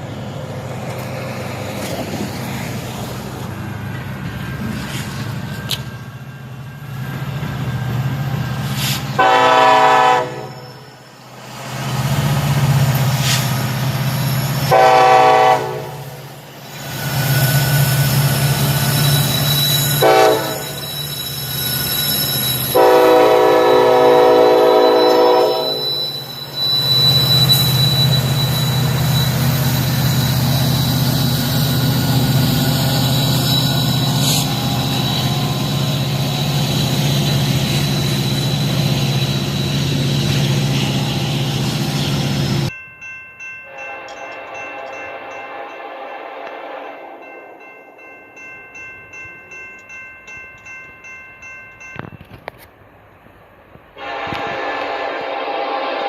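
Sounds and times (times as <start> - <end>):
locomotive air horn blasts: 9.1 - 10.6, 14.7 - 16.2, 20.0 - 20.8, 22.7 - 26.0, 43.7 - 47.2, 54.0 - 56.0.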